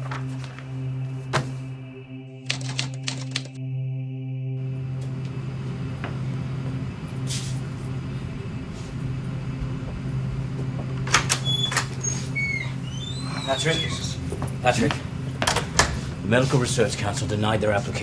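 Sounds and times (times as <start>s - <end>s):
steady low hum: 0.0s - 18.0s
high chirps: 11.4s - 14.2s.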